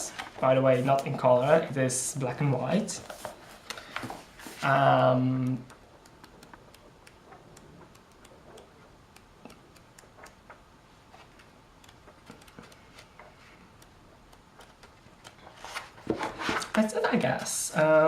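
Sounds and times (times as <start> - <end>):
paper pages being leafed through: 0.1 - 1.7, 2.7 - 4.8, 14.7 - 16.8.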